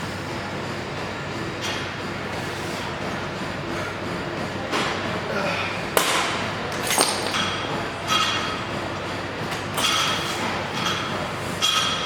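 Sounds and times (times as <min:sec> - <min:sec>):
steady noisy background: 0:00.0 - 0:12.0
gym weights clanking: 0:06.7 - 0:07.7.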